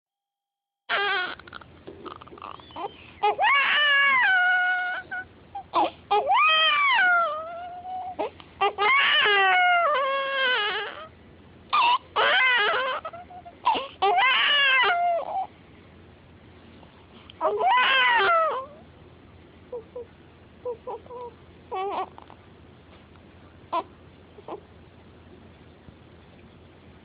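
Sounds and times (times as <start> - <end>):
baby crying: 0.9 - 11.1, 11.7 - 15.5, 17.4 - 18.8, 20.7 - 22.4, 23.7 - 24.6.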